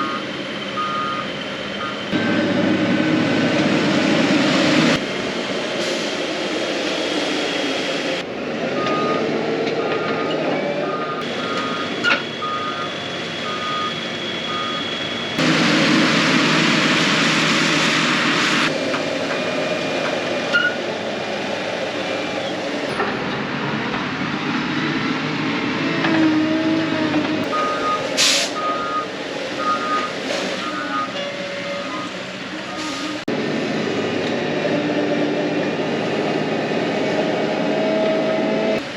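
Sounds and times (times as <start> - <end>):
reversing alarm beeping: 0.0 - 2.8, 8.8 - 15.4, 27.5 - 32.2
heavy harvest machinery running: 0.0 - 38.9.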